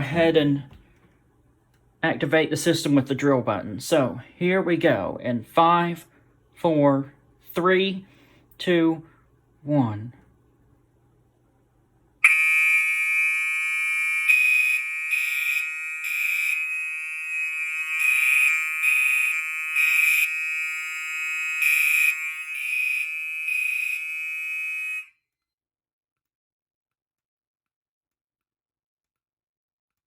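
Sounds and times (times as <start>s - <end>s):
pulsing horn pattern: 12.2s - 25.1s
continuous fire alarm horn: 12.2s - 25.3s.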